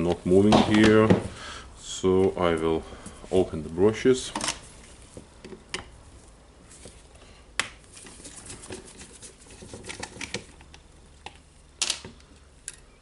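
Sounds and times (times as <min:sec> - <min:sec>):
plastic parts clattering: 0:08.0 - 0:10.7.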